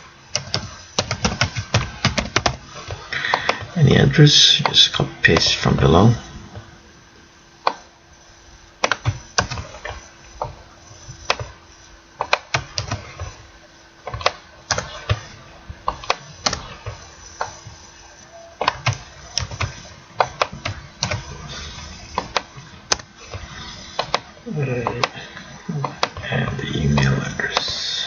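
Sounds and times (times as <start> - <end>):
faint steady hum: 0.0 - 28.0
keyboard typing: 0.3 - 3.7, 8.8 - 11.6, 12.2 - 13.4, 14.0 - 27.9.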